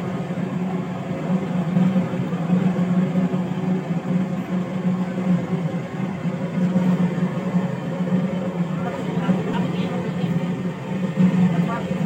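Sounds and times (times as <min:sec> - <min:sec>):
mechanical hum with low drone: 0:00.0 - 0:12.0.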